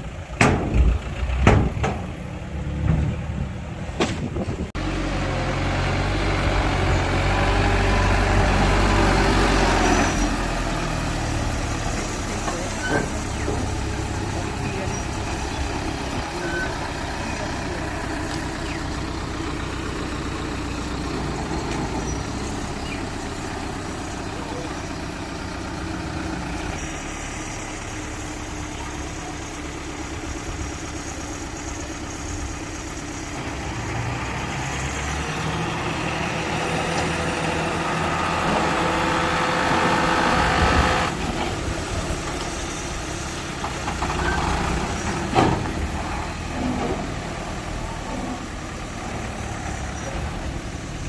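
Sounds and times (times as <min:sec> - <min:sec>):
diesel engine running: 0:00.0 - 0:51.0.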